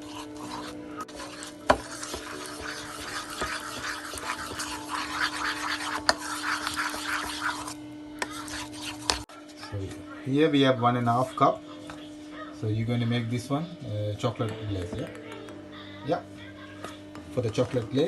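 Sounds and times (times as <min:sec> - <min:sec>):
utensil scraping a bowl: 0:00.0 - 0:09.7.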